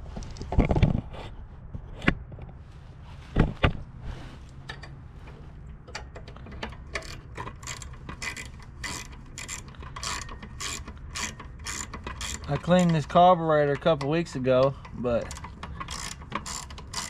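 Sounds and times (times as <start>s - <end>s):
socket ratchet clicking: 5.9s - 13.2s, 14.8s - 17.0s.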